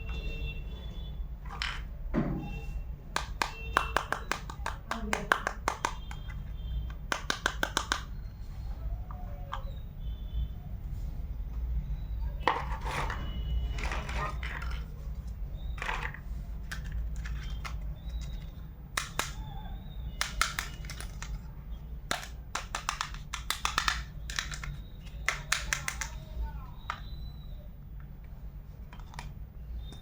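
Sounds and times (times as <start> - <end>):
plastic toy pieces clicking: 3.2 - 8.1, 15.8 - 19.4, 20.2 - 21.5, 22.1 - 26.2.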